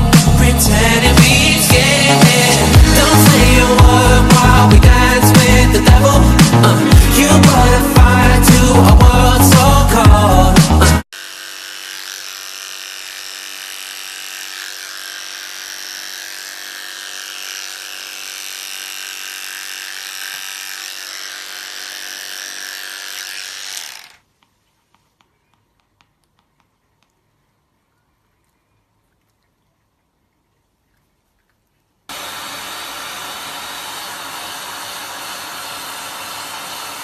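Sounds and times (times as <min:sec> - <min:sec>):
pop music: 0:00.0 - 0:11.0
small electric motor whining: 0:11.1 - 0:24.2, 0:32.1 - 0:37.0.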